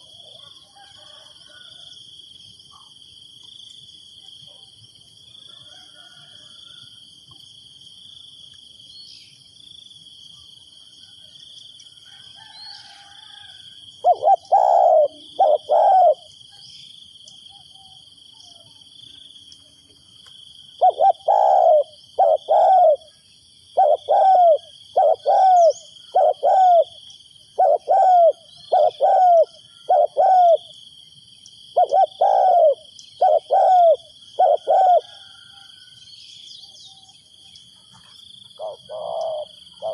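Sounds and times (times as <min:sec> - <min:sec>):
insects trilling: 0:00.0 - 0:39.9
dove cooing: 0:14.0 - 0:16.3, 0:20.8 - 0:30.7, 0:31.7 - 0:35.6, 0:38.6 - 0:39.9.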